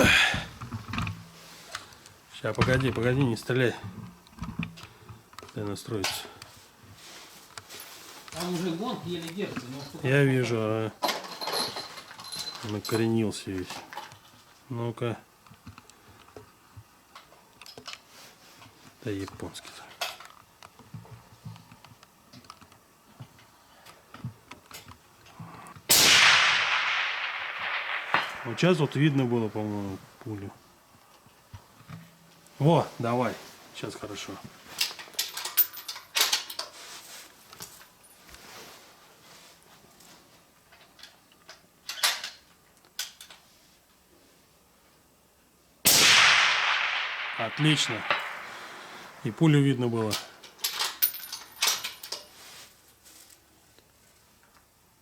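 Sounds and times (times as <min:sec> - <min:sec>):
rifle shot with echo: 0:25.9 - 0:29.2, 0:45.9 - 0:49.4.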